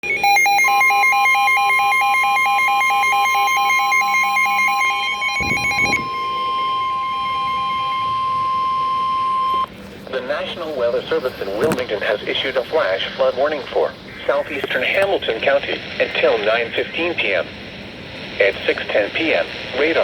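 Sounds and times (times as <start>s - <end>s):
steady high-pitched alarm tone: 0.0s - 9.7s
fast electronic beeping: 5.2s - 6.5s
low thump: 5.4s - 6.1s.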